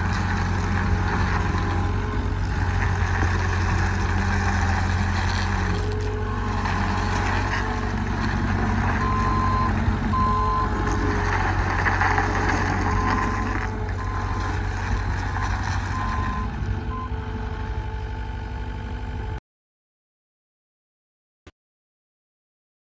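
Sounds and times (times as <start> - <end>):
diesel engine running: 0.0 - 19.4
backup alarm beeping: 9.0 - 10.8.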